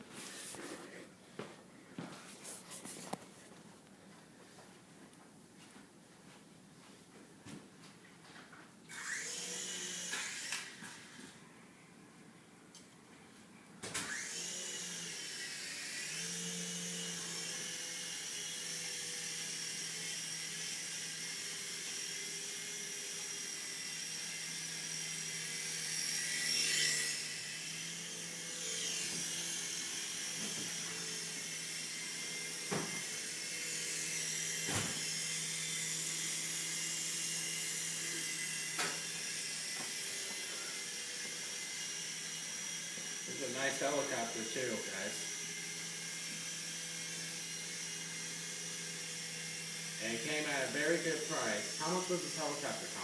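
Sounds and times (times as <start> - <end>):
toy helicopter motor whine: 8.9 - 11.4, 14.0 - 53.0.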